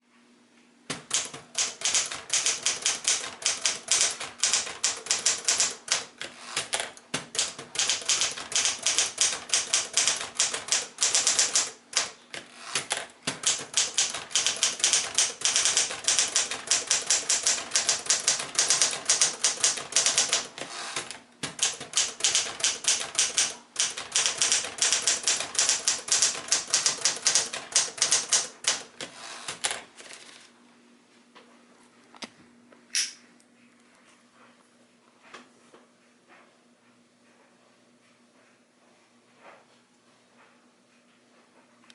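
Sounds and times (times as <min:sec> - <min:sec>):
typewriter keystroke clacks: 0:00.9 - 0:12.2, 0:12.8 - 0:29.8.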